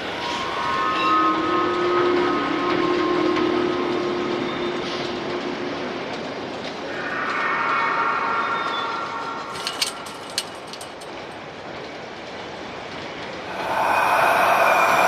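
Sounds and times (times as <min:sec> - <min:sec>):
metal-on-metal screeches: 0:06.9 - 0:11.0.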